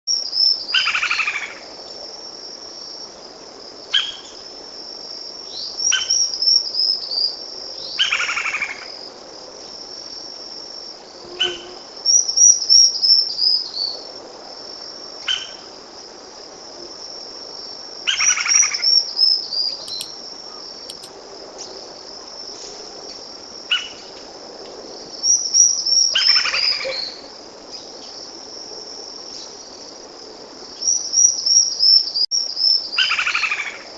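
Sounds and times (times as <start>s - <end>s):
high insect trill: 0.1s - 33.9s
woodpecker calling: 19.8s - 20.1s.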